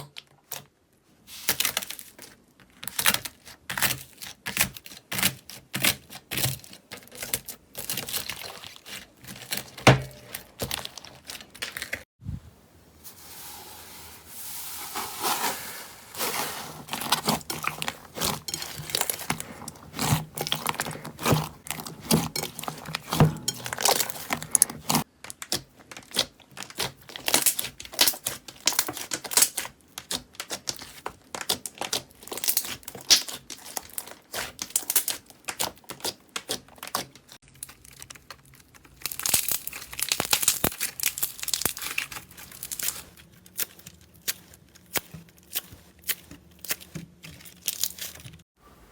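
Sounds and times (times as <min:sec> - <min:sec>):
slime crackling and popping: 0:16.8 - 0:48.4.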